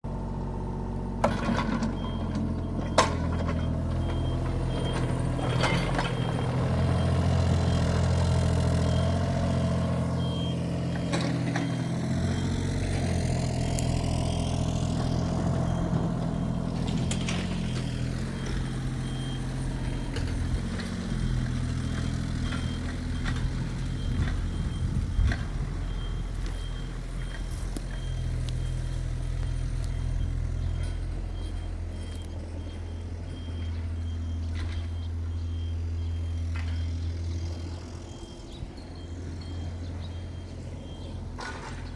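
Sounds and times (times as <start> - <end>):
heavy vehicle engine running: 0.0 - 41.9
high warning beep: 1.3 - 41.9.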